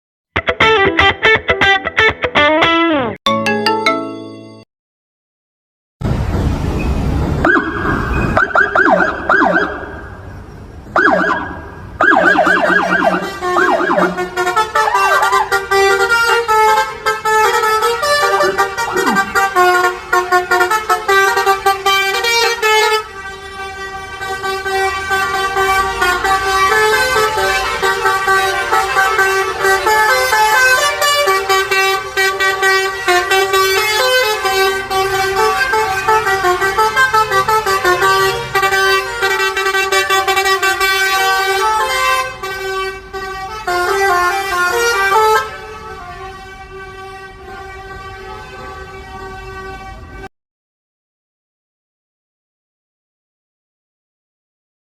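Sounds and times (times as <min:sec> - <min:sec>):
bus air horn melody: 0:12.0 - 0:50.3.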